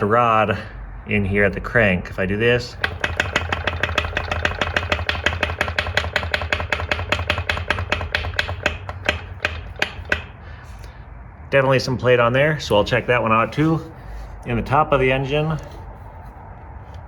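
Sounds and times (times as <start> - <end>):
engine connecting rod clacking: 2.7 - 10.9.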